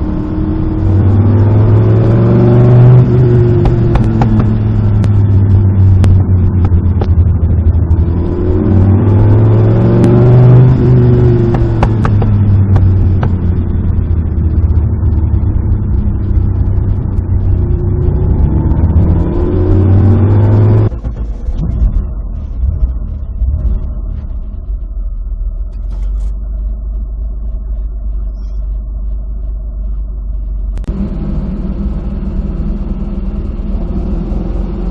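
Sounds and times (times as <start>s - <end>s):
car engine running: 0.0s - 34.9s
sharp pops and clicks: 2.8s - 19.3s, 20.0s - 30.9s.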